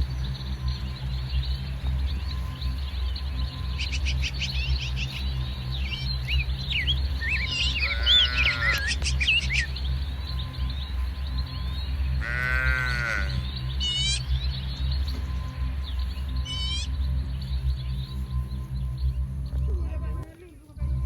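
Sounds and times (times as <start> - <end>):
small birds chirping: 0.0 - 21.0
steady low rumble: 0.0 - 21.0
farm animal bleat: 7.4 - 9.1, 12.2 - 14.2.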